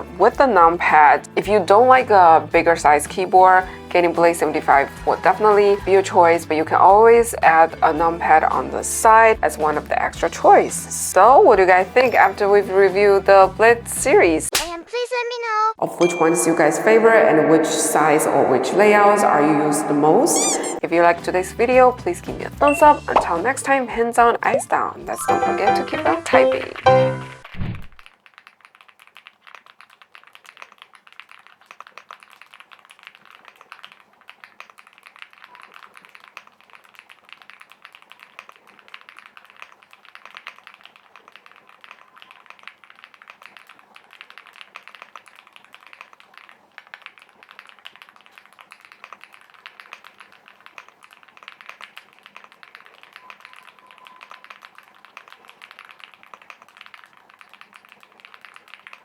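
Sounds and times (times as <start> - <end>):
fast typing on mechanical keyboard: 28.4 - 59.0.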